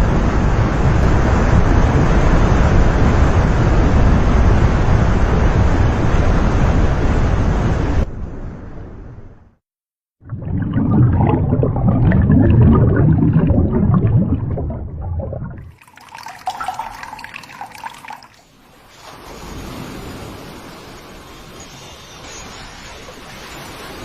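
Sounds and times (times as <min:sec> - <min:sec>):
running water: 0:10.2 - 0:24.0.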